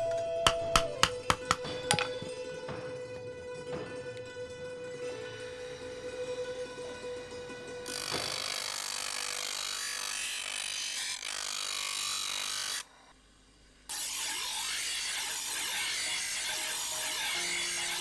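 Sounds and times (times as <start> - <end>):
tool rasping against material: 0.0 - 2.3.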